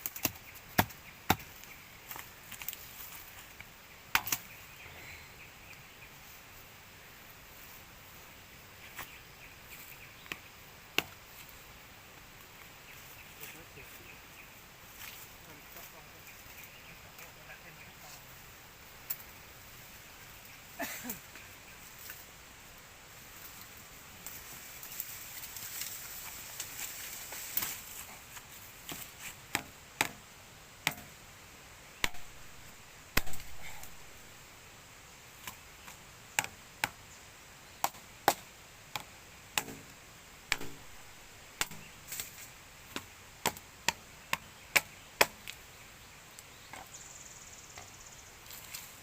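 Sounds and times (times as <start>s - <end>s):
sharp chopping strikes: 30.8s - 31.1s, 32.0s - 32.4s, 33.1s - 33.8s, 37.8s - 39.9s, 40.5s - 40.9s, 41.6s - 42.2s, 42.9s - 45.4s.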